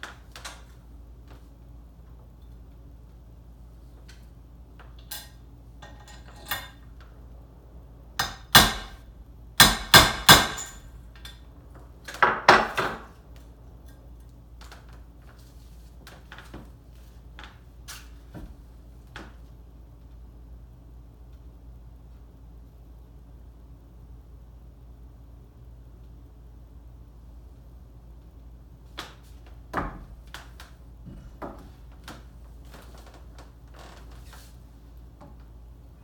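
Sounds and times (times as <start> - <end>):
loud sharp metal clanks: 9.6 - 10.9.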